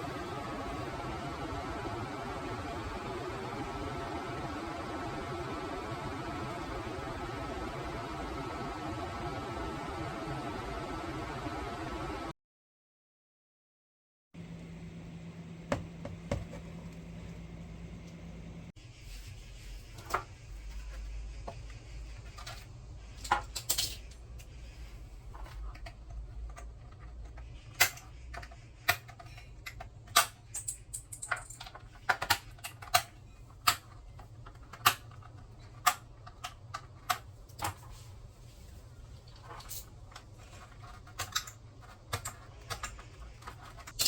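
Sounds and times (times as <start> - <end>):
low steady hum: 14.4 - 44.0.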